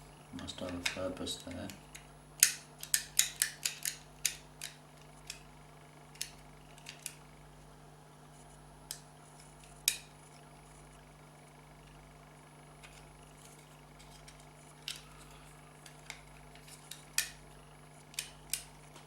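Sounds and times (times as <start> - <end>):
small parts clicking and tapping: 0.6 - 5.5, 6.1 - 7.2, 8.9 - 10.4, 12.8 - 19.0.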